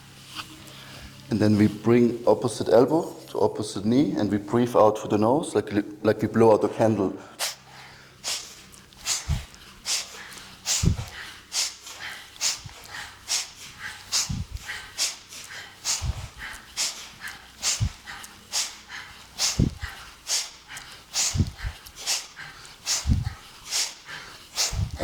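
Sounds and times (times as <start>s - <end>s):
sharp nasal exhalations: 7.3s - 25.0s
dull low thuds: 10.8s - 11.1s, 14.2s - 14.6s, 16.0s - 16.4s, 21.3s - 21.8s, 23.0s - 23.4s, 24.7s - 25.0s.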